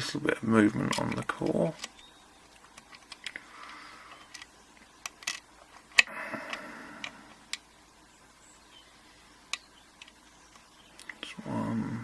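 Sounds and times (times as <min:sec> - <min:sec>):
lock pick ticking and scraping: 0:04.1 - 0:07.6.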